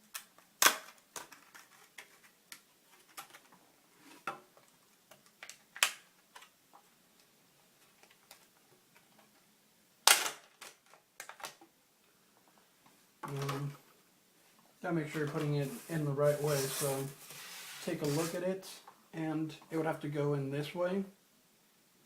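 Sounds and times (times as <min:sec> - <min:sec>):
plastic packaging clicks and snaps: 0:00.1 - 0:03.5, 0:05.1 - 0:06.5, 0:10.1 - 0:11.6.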